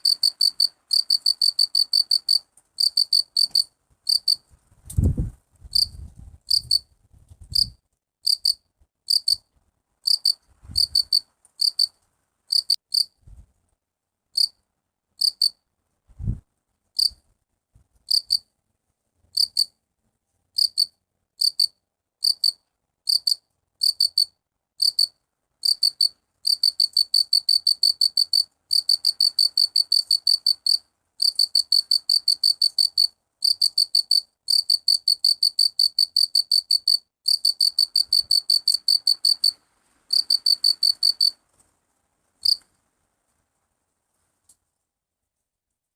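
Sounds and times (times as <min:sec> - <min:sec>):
cricket chirping: 0:00.0 - 0:04.4, 0:07.6 - 0:09.4, 0:10.1 - 0:11.9, 0:12.5 - 0:13.1, 0:14.4 - 0:14.6, 0:15.2 - 0:15.6, 0:17.0 - 0:17.2, 0:18.1 - 0:18.4, 0:20.6 - 0:41.4, 0:42.4 - 0:42.7.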